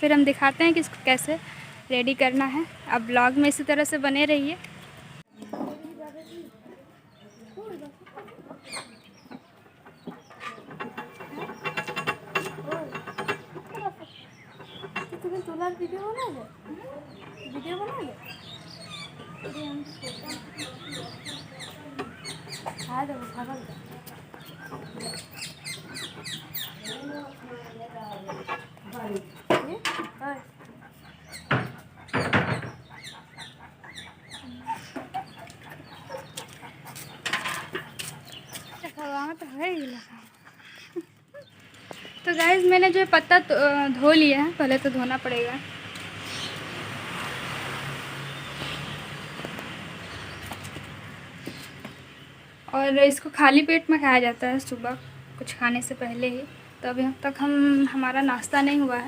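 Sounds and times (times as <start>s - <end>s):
chickens clucking: 6.8s - 42.1s.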